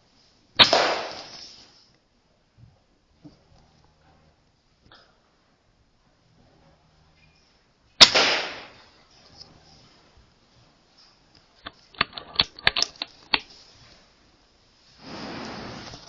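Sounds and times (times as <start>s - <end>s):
air rifle shot: 0.6s - 1.5s, 8.0s - 8.8s
sharp clicks: 11.6s - 13.5s.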